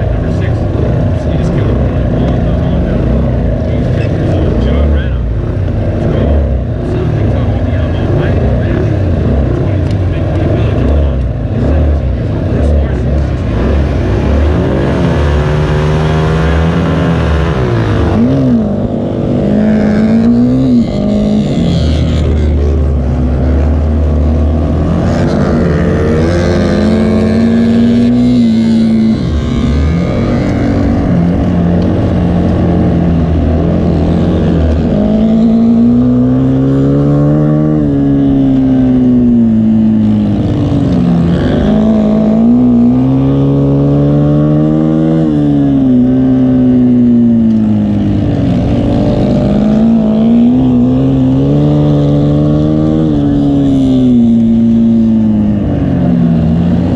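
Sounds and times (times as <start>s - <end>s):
race car engines revving: 0.0s - 56.9s.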